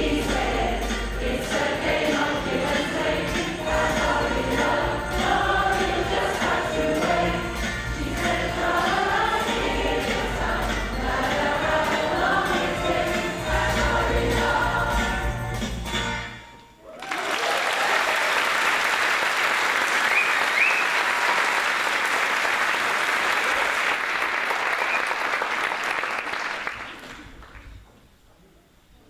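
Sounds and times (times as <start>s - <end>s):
audience applauding: 16.8s - 27.7s.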